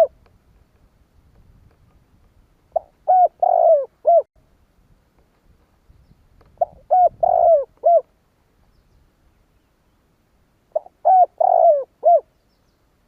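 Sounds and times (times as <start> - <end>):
dove cooing: 2.7 - 4.3, 6.6 - 8.1, 10.7 - 12.3.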